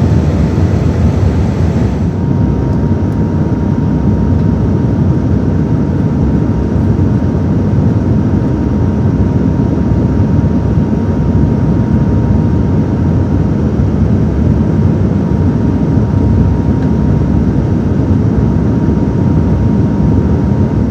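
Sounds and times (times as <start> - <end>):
thin steady whine: 0.0 - 2.7
airliner cabin engine and airflow rush: 0.0 - 20.9.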